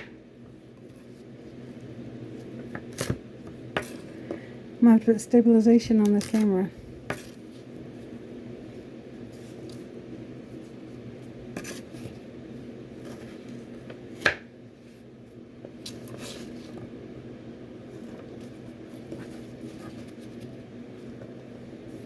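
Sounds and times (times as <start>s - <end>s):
steady low hum: 0.0s - 22.0s
knife scraping cutting board: 11.6s - 12.1s.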